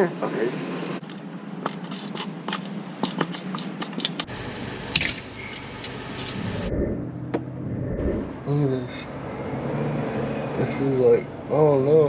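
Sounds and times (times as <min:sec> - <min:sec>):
hand tools clicking against metal: 0:01.0 - 0:04.3
steady hum: 0:04.3 - 0:09.4.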